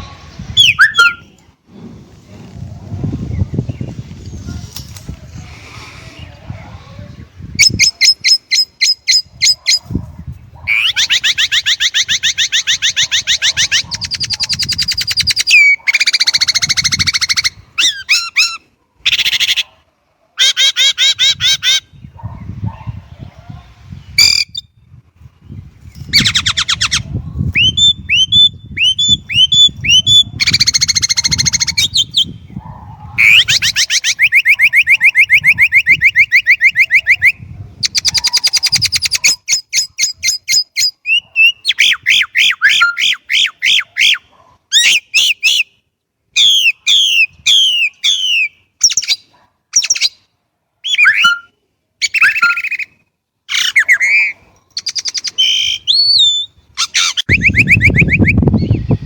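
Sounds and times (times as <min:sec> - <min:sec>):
blackbird singing: 0:00.4 - 0:01.5, 0:07.5 - 0:09.9, 0:10.7 - 0:19.6, 0:26.1 - 0:32.6, 0:33.2 - 0:45.7, 0:50.8 - 0:59.0.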